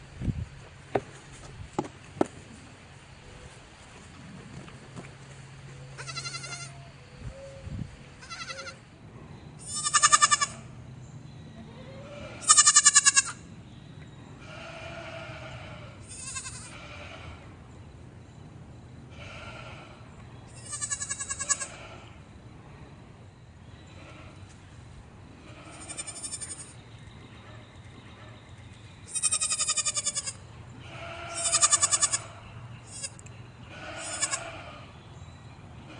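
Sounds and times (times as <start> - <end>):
goat bleating: 6.0 - 6.8, 8.2 - 8.8, 9.6 - 10.7, 11.8 - 13.4, 14.4 - 17.2, 20.5 - 22.0, 25.5 - 26.8, 29.1 - 32.3, 32.9 - 34.9.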